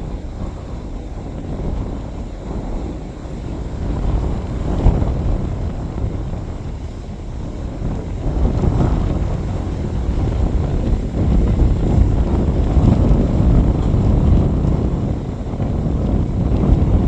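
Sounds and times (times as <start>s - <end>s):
strong wind buffeting microphone: 0.0s - 17.0s.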